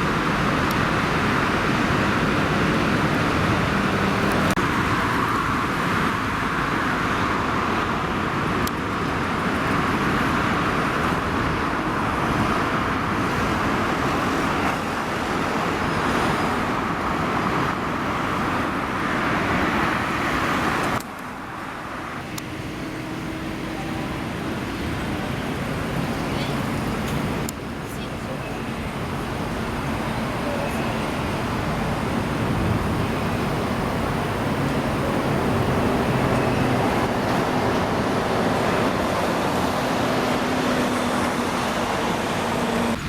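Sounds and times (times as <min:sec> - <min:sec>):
road traffic rush: 0:00.0 - 0:43.0.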